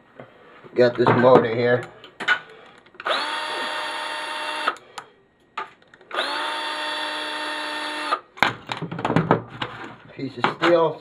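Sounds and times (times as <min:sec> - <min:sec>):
power drill spinning: 0:03.0 - 0:04.8, 0:06.1 - 0:08.2
plastic and metal parts clattering: 0:08.4 - 0:10.9.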